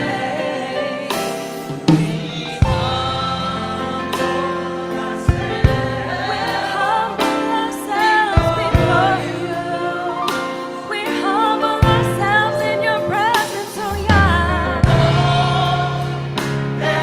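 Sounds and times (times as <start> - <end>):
choir singing: 0.0 - 17.0
low beats: 11.8 - 16.7.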